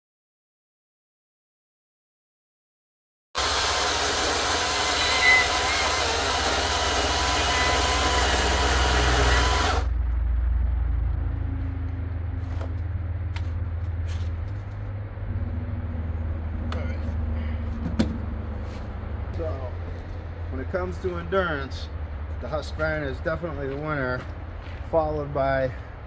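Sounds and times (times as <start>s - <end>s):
battery chainsaw cutting log: 3.4s - 9.9s
low hum: 5.2s - 24.9s.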